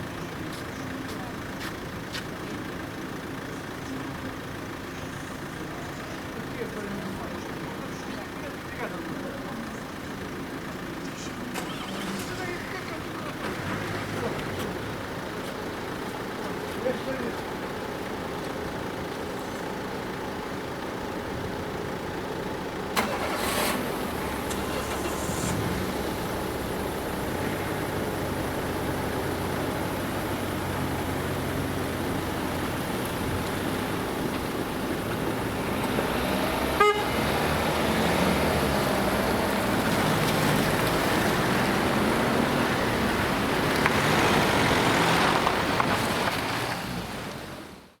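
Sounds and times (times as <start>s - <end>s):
vehicles passing: 0.0s - 48.0s
short horn toot: 36.8s - 37.2s.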